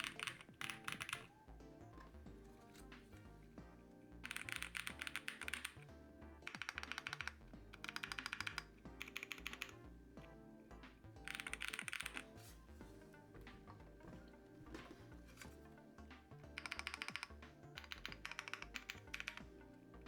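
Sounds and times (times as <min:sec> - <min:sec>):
mechanical keyboard typing: 0:00.0 - 0:03.3, 0:04.2 - 0:09.9, 0:11.2 - 0:12.5, 0:14.7 - 0:19.7
background music: 0:00.0 - 0:20.0.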